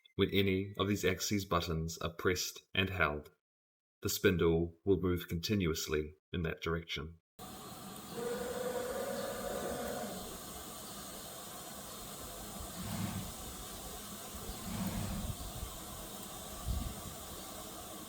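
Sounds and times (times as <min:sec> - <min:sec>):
steady hiss: 0:07.4 - 0:18.0.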